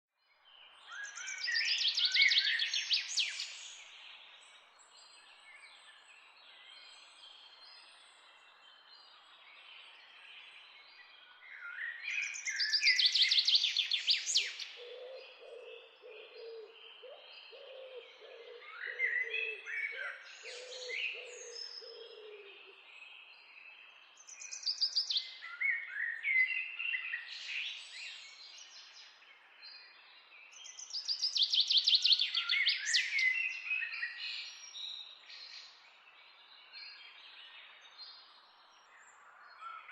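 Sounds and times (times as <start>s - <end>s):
soft bird calls: 11.6s - 22.9s
low repeated bird call: 13.0s - 22.9s
bird song with fast trills: 18.8s - 39.9s.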